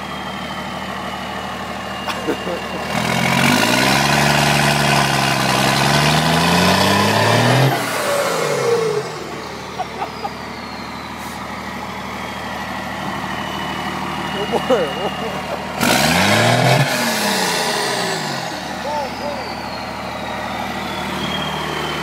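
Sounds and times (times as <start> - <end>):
diesel engine revving: 0.0 - 22.0
high turbo whistle: 7.0 - 22.0.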